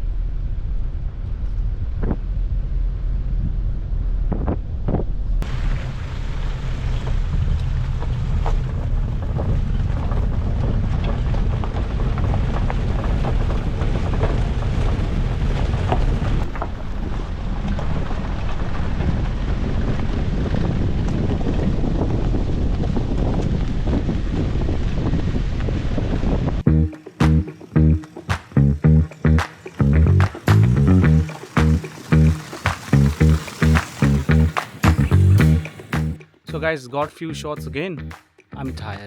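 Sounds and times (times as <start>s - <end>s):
gravel ticks and crackles: 6.8s - 25.8s, 29.2s - 36.1s
wind buffeting microphone: 7.2s - 26.6s, 29.8s - 36.0s
vehicle engine low rumble: 26.5s - 36.2s.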